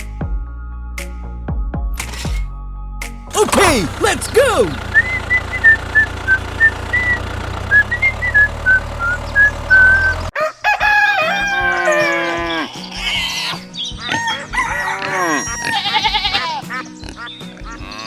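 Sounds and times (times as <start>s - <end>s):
background music with beat: 0.0s - 4.7s
chicken calls: 3.4s - 18.0s
rooster crowing: 10.4s - 12.5s, 14.1s - 16.1s.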